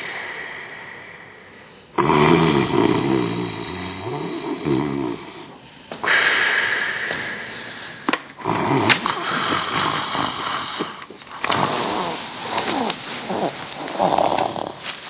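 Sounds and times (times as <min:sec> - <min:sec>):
hissing breath: 0:00.0 - 0:02.5, 0:03.2 - 0:14.9
person snoring: 0:00.0 - 0:15.0.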